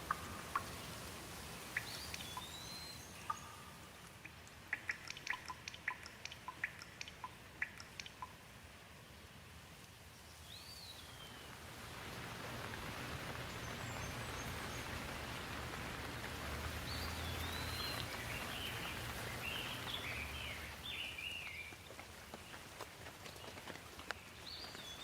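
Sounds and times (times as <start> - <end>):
rain hiss: 0.0 - 25.0
bird whistling and chirping: 1.8 - 3.6.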